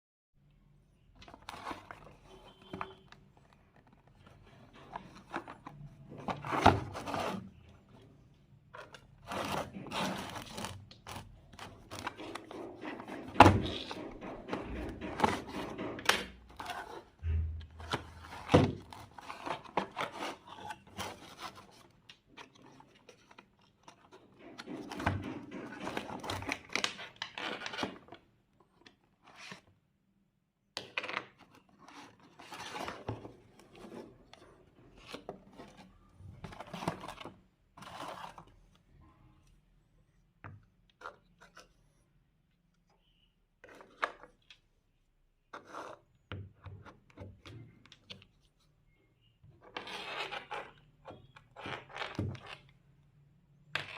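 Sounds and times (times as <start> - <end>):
packaging rustling and scraping: 1.2 - 28.2, 31.3 - 38.8
knocks: 17.2 - 18.9.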